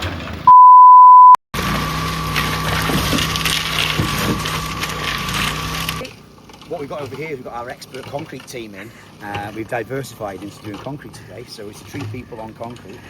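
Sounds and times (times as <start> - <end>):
loud bleep tone: 0.5 - 1.4.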